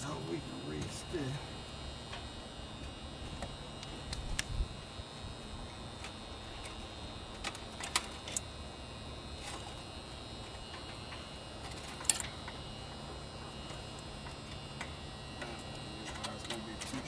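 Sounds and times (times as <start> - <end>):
steady low hum: 0.0 - 17.0
metallic clicks from handling wires: 10.7 - 12.6, 13.7 - 17.0.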